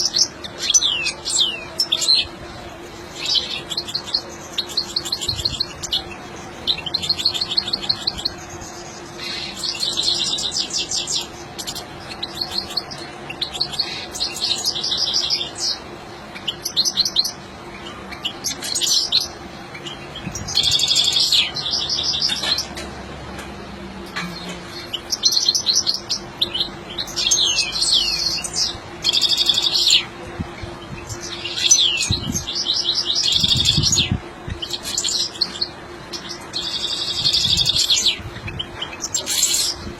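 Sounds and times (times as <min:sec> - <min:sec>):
goldfinch singing: 0:00.0 - 0:22.8, 0:24.1 - 0:30.1, 0:31.0 - 0:39.9.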